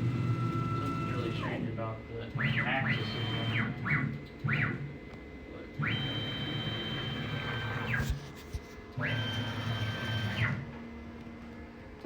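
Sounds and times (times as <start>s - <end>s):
stepper motor whine: 0.0s - 1.6s.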